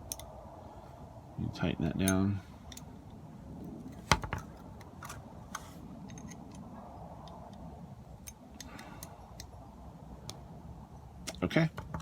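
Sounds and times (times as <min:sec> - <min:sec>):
hand tool clicking on metal parts: 0:00.0 - 0:00.3.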